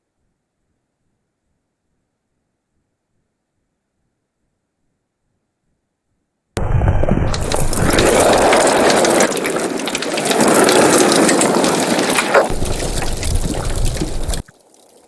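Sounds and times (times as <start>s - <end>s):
water bubbling and gurgling: 6.6s - 15.0s.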